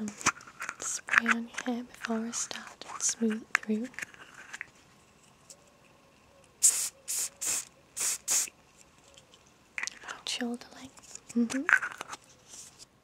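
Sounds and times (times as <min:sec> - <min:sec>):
spray bottle spritzing: 0:06.6 - 0:08.5.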